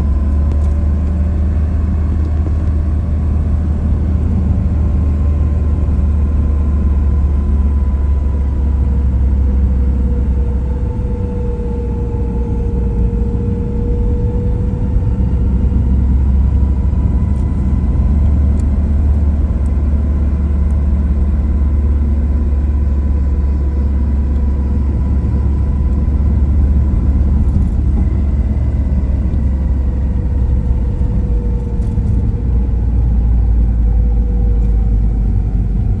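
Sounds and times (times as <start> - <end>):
car rumble in motion: 0.0 - 36.0
faint whining tones: 0.0 - 36.0.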